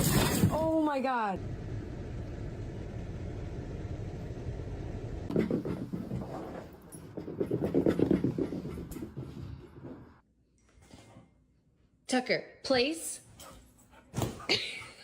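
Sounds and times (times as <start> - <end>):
steady low rumble: 1.4 - 6.2.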